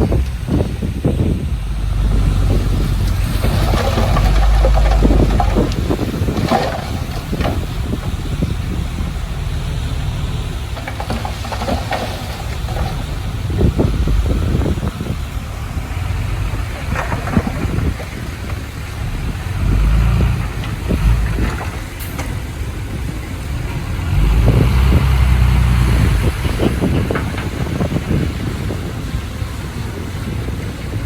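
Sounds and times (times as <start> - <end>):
metal clanks and rattles: 0.0 - 15.4, 16.4 - 19.3
bulldozer diesel engine rumbling: 0.0 - 31.0.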